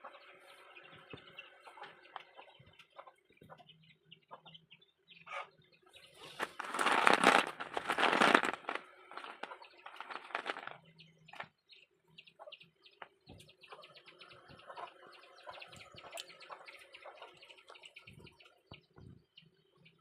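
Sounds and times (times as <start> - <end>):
gritty crunching: 6.2 - 10.8.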